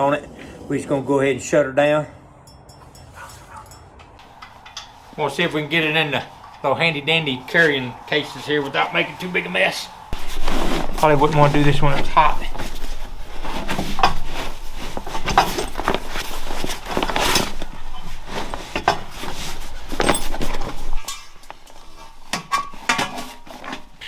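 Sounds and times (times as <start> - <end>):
metal griddle parts clunking: 2.6 - 6.7, 10.9 - 24.0
fabric rustling: 4.2 - 24.0.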